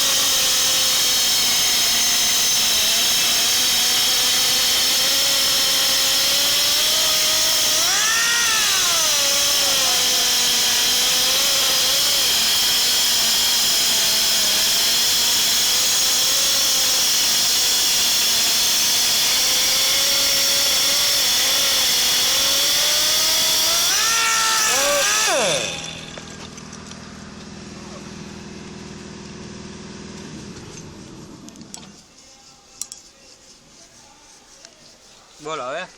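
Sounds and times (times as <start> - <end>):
air grinder hissing and whining: 0.0 - 26.5.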